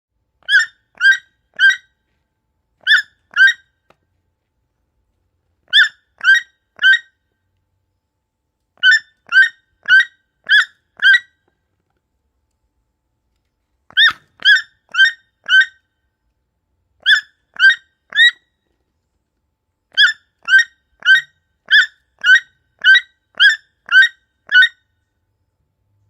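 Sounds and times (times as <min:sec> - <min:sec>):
baby toucan calling: 0:00.4 - 0:01.9, 0:02.8 - 0:03.6, 0:05.7 - 0:07.1, 0:08.8 - 0:11.3, 0:13.9 - 0:15.8, 0:17.0 - 0:18.4, 0:19.9 - 0:24.8.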